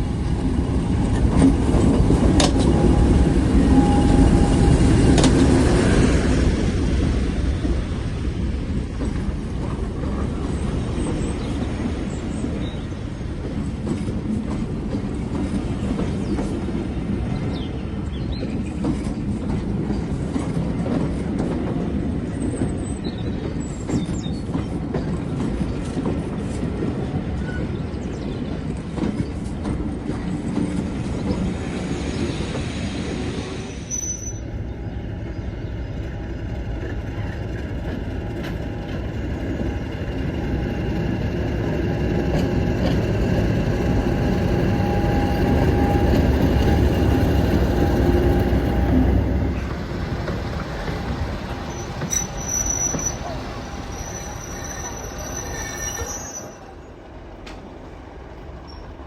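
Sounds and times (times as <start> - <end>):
train wheels rumbling on track: 0.0 - 59.0
high wheel squeals: 33.6 - 34.6, 51.5 - 56.8.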